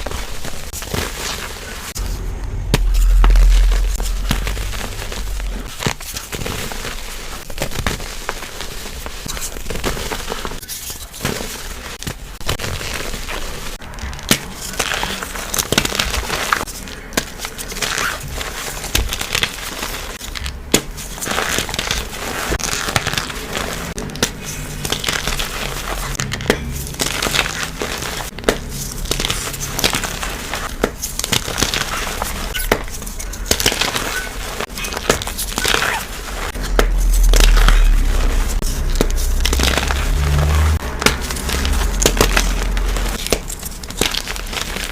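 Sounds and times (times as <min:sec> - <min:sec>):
loud low rumble: 0:01.9 - 0:06.0, 0:36.4 - 0:43.2
chalk blocks crushed by hand: 0:05.7 - 0:44.9.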